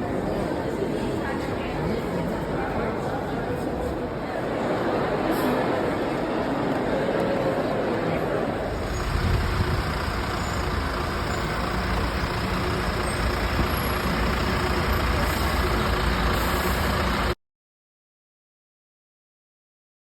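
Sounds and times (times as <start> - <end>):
bus engine rumble: 3.8 - 17.4.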